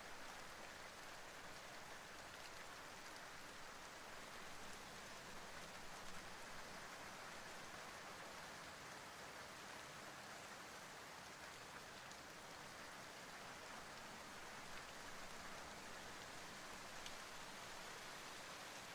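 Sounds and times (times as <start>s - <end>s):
steady rain hiss: 0.0s - 18.9s.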